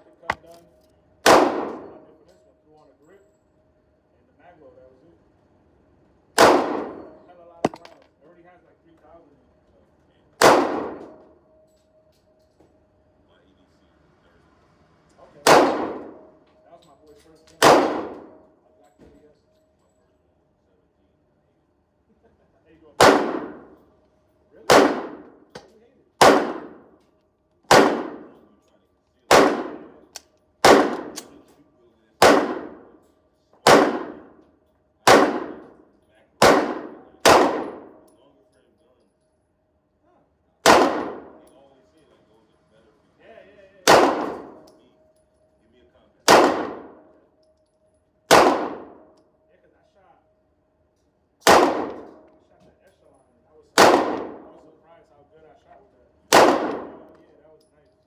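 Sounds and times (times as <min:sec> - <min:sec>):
pistol shots: 0:00.2 - 0:00.6, 0:01.2 - 0:02.1, 0:06.4 - 0:08.0, 0:10.4 - 0:11.2, 0:15.4 - 0:16.4, 0:17.6 - 0:18.4, 0:23.0 - 0:23.8, 0:24.7 - 0:26.9, 0:27.7 - 0:28.5, 0:29.3 - 0:31.4, 0:32.2 - 0:33.0, 0:33.6 - 0:34.4, 0:35.0 - 0:35.8, 0:36.4 - 0:38.1, 0:40.6 - 0:41.5, 0:43.8 - 0:44.8, 0:46.3 - 0:47.1, 0:48.3 - 0:49.2, 0:51.4 - 0:52.3, 0:53.8 - 0:54.6, 0:56.3 - 0:57.2.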